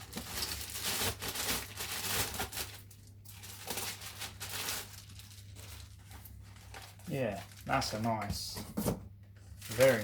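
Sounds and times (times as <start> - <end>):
stiff fabric bag crinkling: 0.0 - 8.0.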